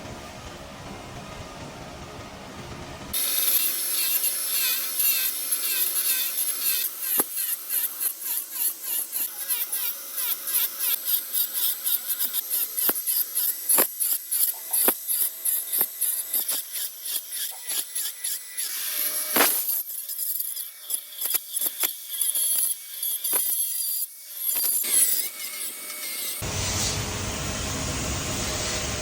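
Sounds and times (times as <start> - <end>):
tool carving wood: 3.1 - 27.0.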